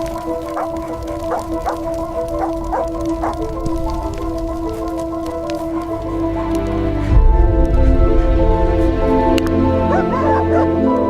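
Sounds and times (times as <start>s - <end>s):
sustained background music: 0.0s - 11.0s
low rumbling bass: 2.9s - 11.0s.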